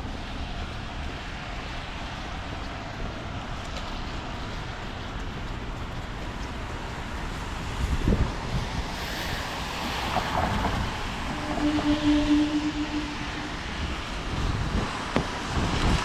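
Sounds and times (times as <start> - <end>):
wet street traffic: 0.0 - 16.0
wind buffeting microphone: 2.3 - 16.0
rain hiss: 6.0 - 11.5.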